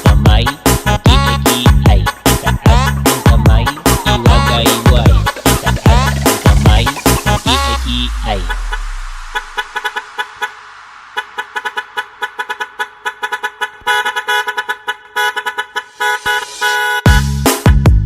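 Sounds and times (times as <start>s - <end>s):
heavy bass dance beat: 0.0s - 14.2s, 15.7s - 18.0s
truck air horn blasts: 7.6s - 17.4s.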